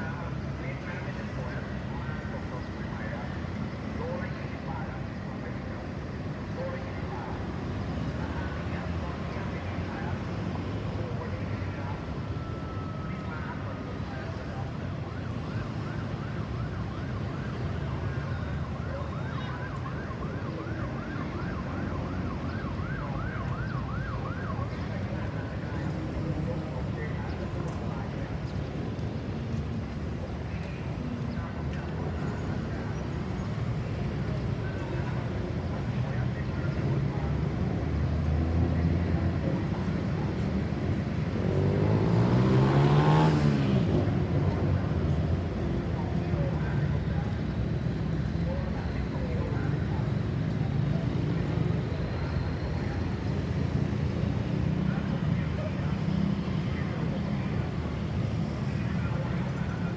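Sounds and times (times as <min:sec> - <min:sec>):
low traffic rumble: 0:00.0 - 0:59.9
ambulance siren yelping: 0:15.2 - 0:24.9
vehicle passing close: 0:41.3 - 0:44.4.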